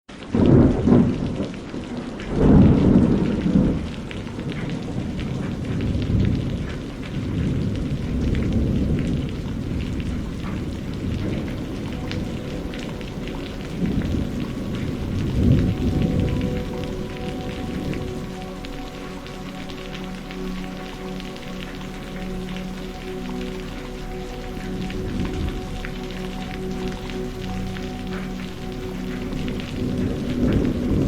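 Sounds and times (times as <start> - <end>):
steady rain: 0.1 - 31.0
deep rolling thunder: 0.3 - 19.0, 29.4 - 31.0.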